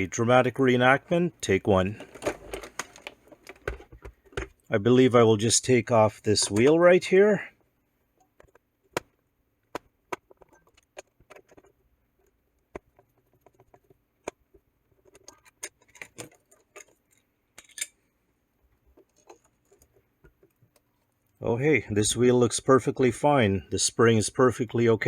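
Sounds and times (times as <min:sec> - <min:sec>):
light clicks and rattles: 0:18.8 - 0:21.4.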